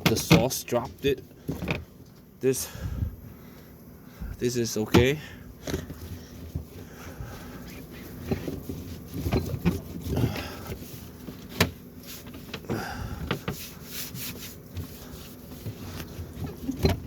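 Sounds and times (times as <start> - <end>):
cloth scrubbing glass shelf: 6.0 - 17.0.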